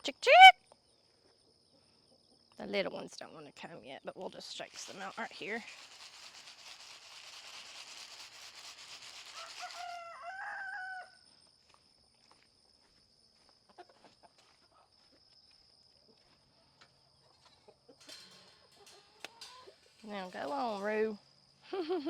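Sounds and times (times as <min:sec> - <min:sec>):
chicken feed rattling: 0:04.5 - 0:10.4, 0:17.3 - 0:21.0
rooster crowing: 0:09.4 - 0:11.2.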